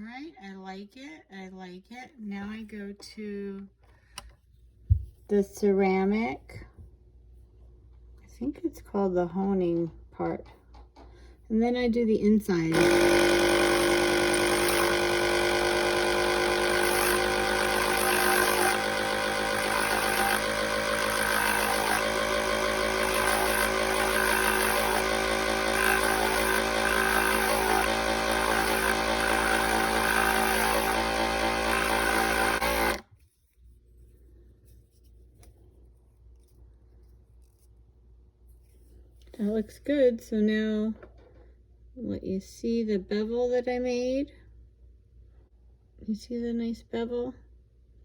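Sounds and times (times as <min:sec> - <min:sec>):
electric motor whine: 0:12.7 - 0:33.0.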